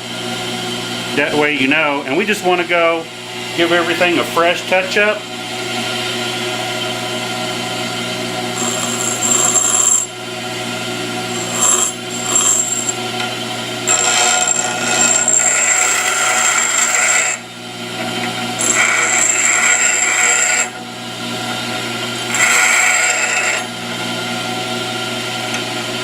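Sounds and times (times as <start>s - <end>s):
grinder running: 5.6s - 26.0s
high grinding hiss: 8.6s - 10.1s, 11.3s - 13.0s.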